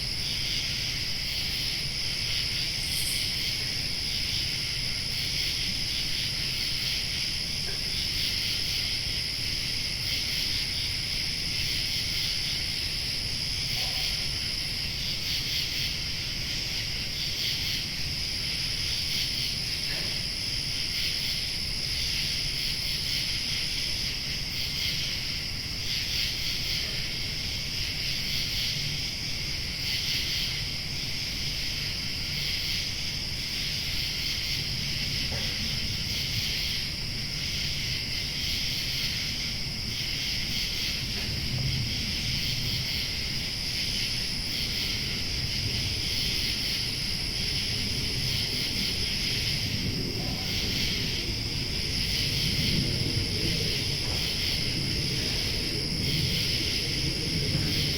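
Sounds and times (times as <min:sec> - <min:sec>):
high insect buzz: 0:00.0 - 0:07.2
insects trilling: 0:00.0 - 0:57.9.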